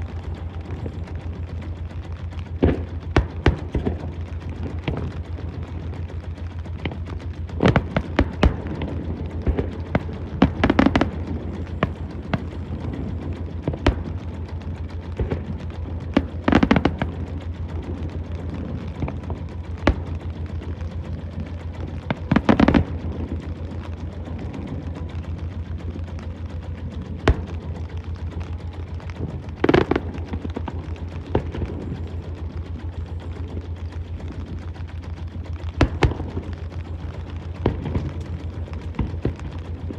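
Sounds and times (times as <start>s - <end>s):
fireworks bangs and crackle: 0.0s - 39.9s
low throbbing: 0.0s - 39.9s.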